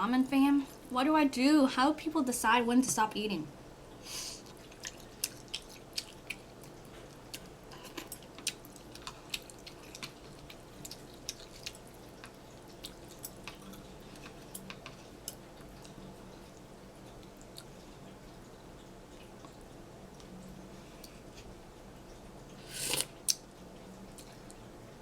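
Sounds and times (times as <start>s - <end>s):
soft chewing: 3.9s - 25.0s
wet mouth clicks: 22.7s - 23.4s.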